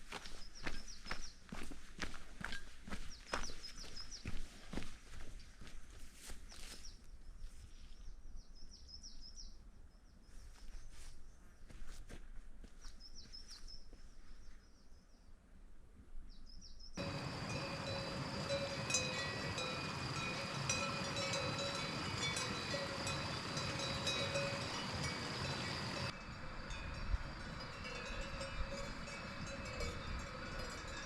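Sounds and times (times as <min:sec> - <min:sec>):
many bells jangling: 0:17.0 - 0:31.0.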